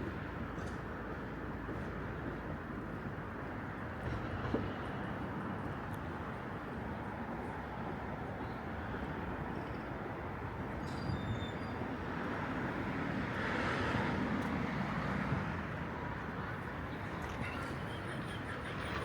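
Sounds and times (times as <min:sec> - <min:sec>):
traffic passing: 0:11.8 - 0:19.0.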